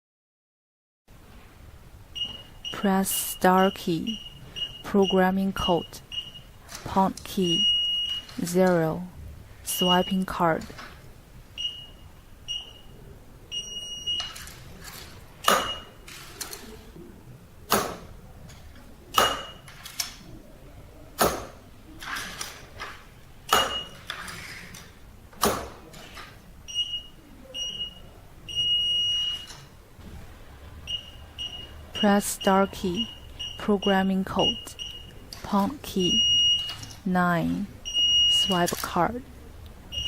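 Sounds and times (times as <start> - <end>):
keypad beeping: 2.2 - 8.5, 11.6 - 13.0, 13.6 - 14.6, 23.5 - 24.1, 26.7 - 29.7, 30.8 - 37.0.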